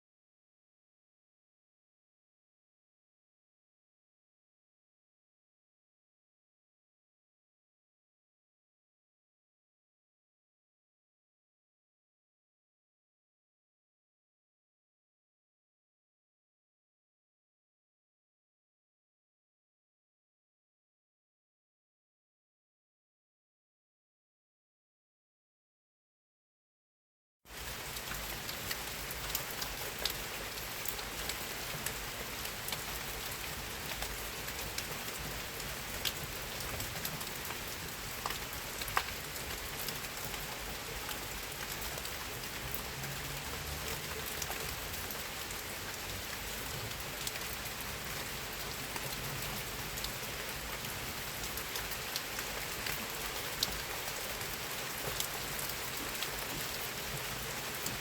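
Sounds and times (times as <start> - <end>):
steady rain falling: 27.5 - 58.0
raindrops tapping: 27.8 - 47.6.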